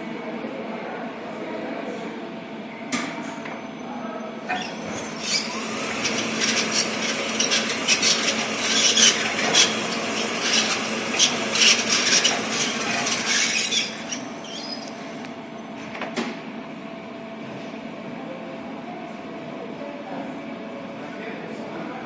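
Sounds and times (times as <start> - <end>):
lift drive unit hum: 3.4 - 16.0
lift drive unit scraping: 4.5 - 15.2.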